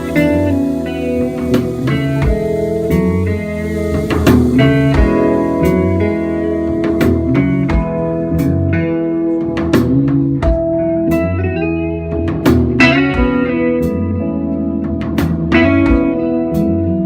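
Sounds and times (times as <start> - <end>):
cymbal strokes: 0.0 - 10.4
live band playing: 0.0 - 17.0.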